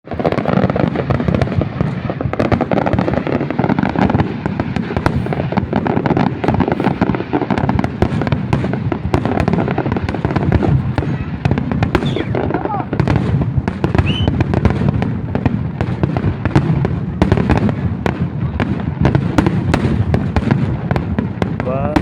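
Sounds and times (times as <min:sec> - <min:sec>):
fireworks crackling and banging: 0:00.0 - 0:22.0.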